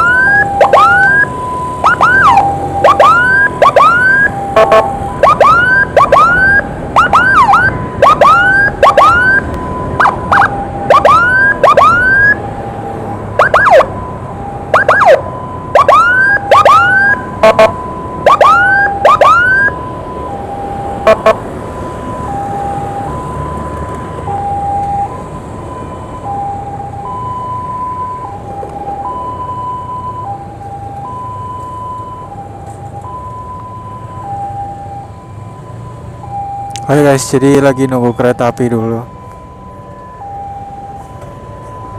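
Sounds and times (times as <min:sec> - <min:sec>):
siren whoop blasts: 0:00.0 - 0:21.4
hi-lo siren: 0:00.0 - 0:41.9.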